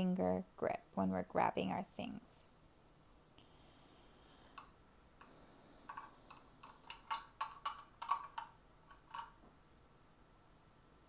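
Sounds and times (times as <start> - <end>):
small objects clicking in a box: 5.9 - 9.4.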